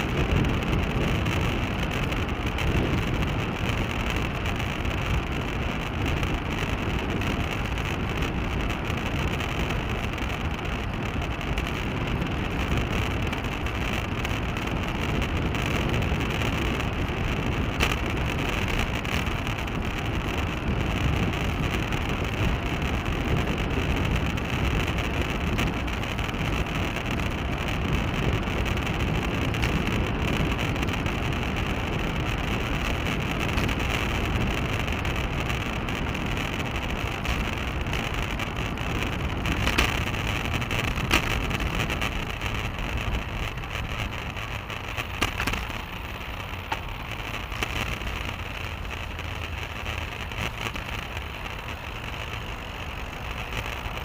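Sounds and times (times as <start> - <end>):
tyre and road rumble: 0.0 - 54.0
wind over microphone: 0.0 - 54.0
sharp clicks and knocks: 32.8 - 48.3.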